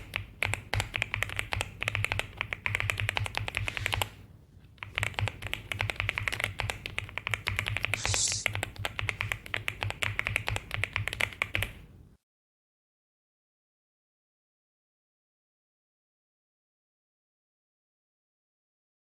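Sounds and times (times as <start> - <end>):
mechanical keyboard typing: 0.0 - 4.1, 4.8 - 11.8
brief hiss: 8.0 - 8.5.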